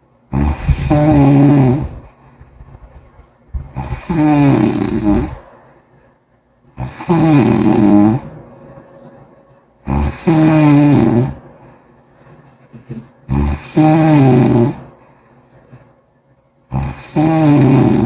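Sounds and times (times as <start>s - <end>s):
person snoring loudly: 0.3s - 2.1s, 3.7s - 5.4s, 6.8s - 8.3s, 9.8s - 11.4s, 13.3s - 14.9s, 16.7s - 18.0s.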